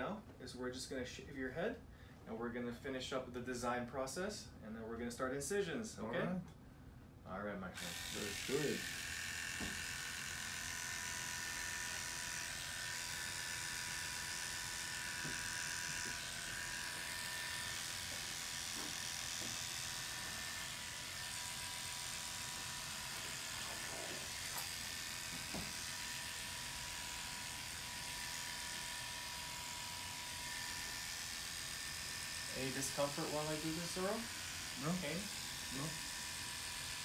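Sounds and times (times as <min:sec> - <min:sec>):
electric hair clippers running: 0:07.8 - 0:37.0.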